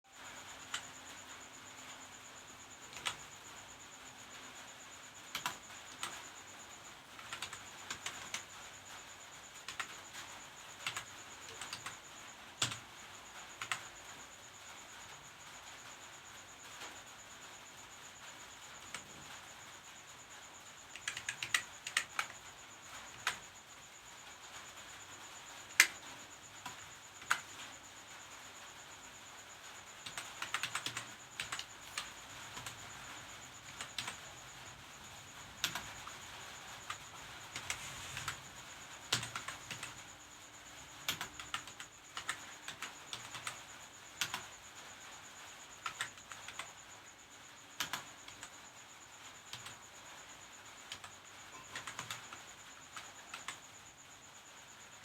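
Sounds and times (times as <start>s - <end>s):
faint high-pitched whine: 0.1s - 55.0s
keyboard typing: 2.9s - 3.3s, 5.3s - 6.2s, 7.2s - 8.5s, 9.6s - 12.0s, 12.6s - 12.8s, 13.4s - 14.0s, 18.8s - 19.3s, 20.9s - 22.4s, 23.1s - 23.5s, 26.6s - 27.6s, 30.0s - 40.1s, 40.9s - 43.6s, 44.2s - 44.5s, 45.8s - 46.8s, 47.8s - 48.5s, 49.5s - 49.8s, 50.9s - 53.6s.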